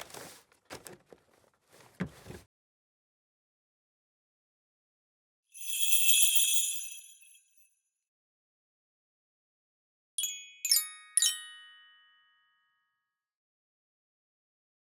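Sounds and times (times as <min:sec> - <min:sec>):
small bells jingling: 0:05.6 - 0:07.6.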